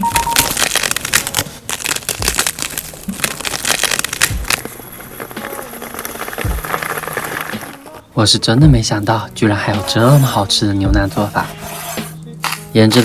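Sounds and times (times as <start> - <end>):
sharp crunching and clicking: 0.0 - 8.0.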